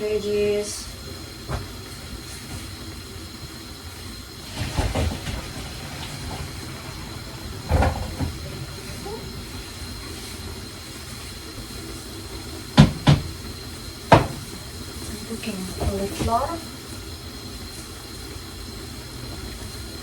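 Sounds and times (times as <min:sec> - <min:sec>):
stovetop cooking hiss: 0:00.0 - 0:20.0
pots and utensils clattering: 0:04.4 - 0:10.5.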